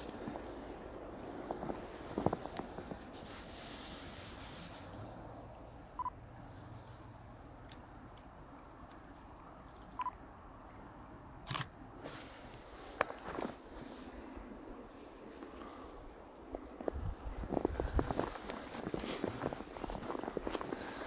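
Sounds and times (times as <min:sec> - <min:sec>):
camera focus beeps: 0:10.0 - 0:10.2
camera shutter click: 0:11.5 - 0:11.7.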